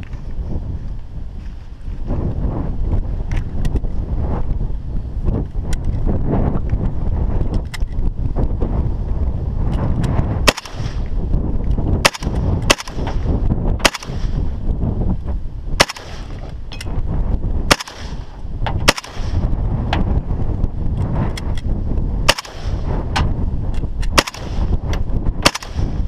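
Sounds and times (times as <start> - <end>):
wind rumbling on microphone: 0.0 - 26.0
loud gunshots: 10.4 - 11.0, 12.0 - 14.4, 15.8 - 16.5, 17.7 - 19.5, 22.2 - 22.9, 24.2 - 24.8, 25.4 - 26.0
distant gunshots: 10.5 - 11.0, 12.0 - 14.4, 15.8 - 16.5, 17.7 - 19.5, 22.3 - 22.9, 24.1 - 24.7, 25.4 - 26.0.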